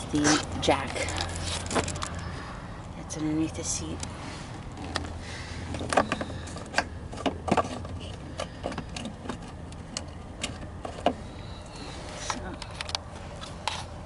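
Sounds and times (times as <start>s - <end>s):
steady low hum: 0.0s - 14.0s
clicks and knocks of hard parts: 5.7s - 11.2s.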